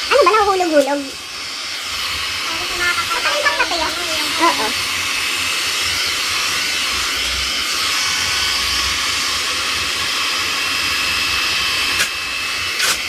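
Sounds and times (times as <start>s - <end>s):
hair dryer blowing air: 0.0s - 13.0s.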